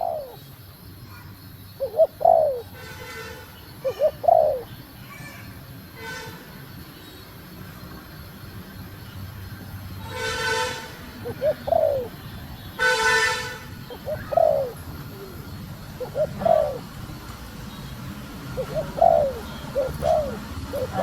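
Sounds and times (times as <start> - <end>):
dove cooing: 0.0 - 0.4, 1.8 - 2.8, 3.8 - 4.8, 10.4 - 21.0.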